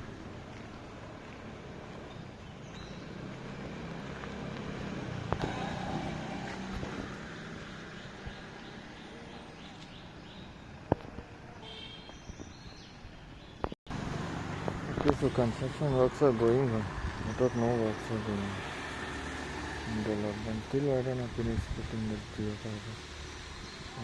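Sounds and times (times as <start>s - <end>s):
vehicle engine and road noise: 0.0s - 24.0s.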